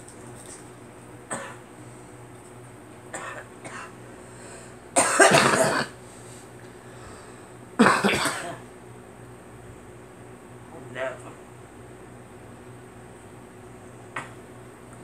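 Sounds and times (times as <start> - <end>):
girl coughing: 1.3 - 1.6, 3.1 - 4.0, 5.0 - 6.0, 7.8 - 8.6.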